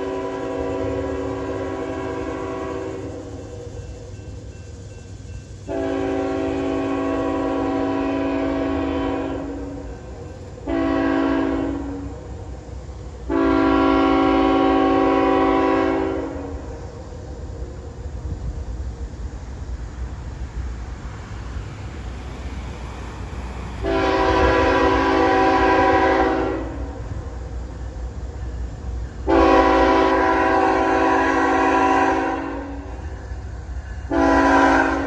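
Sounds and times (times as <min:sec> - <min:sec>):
locomotive air horn: 0:00.0 - 0:03.4, 0:05.7 - 0:12.3, 0:13.3 - 0:16.8, 0:23.8 - 0:27.4, 0:29.2 - 0:33.1, 0:34.1 - 0:35.0
low train rumble: 0:00.0 - 0:35.0.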